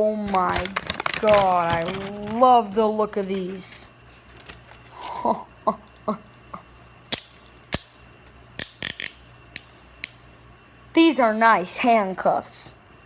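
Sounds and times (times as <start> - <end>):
handcuffs metallic clicks: 6.4 - 8.0, 8.6 - 10.2.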